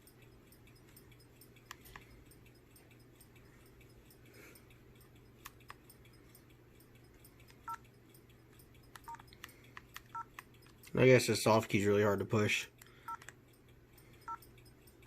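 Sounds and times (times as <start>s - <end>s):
faint clicks: 0.0s - 11.0s
phone key beeps: 7.4s - 7.8s, 8.8s - 10.8s, 13.0s - 13.4s, 14.2s - 15.0s.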